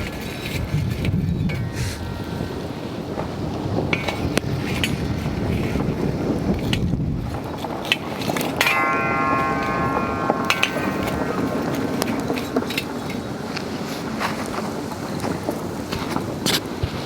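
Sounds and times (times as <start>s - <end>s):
rush of flame and wind: 0.0s - 17.0s
multi-pitch steady tone: 8.6s - 14.2s.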